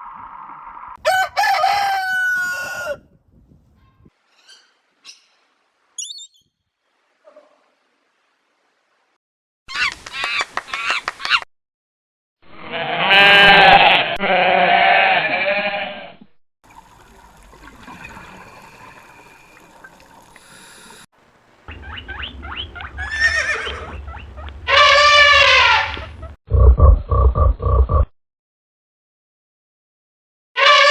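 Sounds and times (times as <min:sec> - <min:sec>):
animal bleating calls: 0:12.6 - 0:16.0, 0:21.7 - 0:26.4, 0:30.6 - 0:30.9.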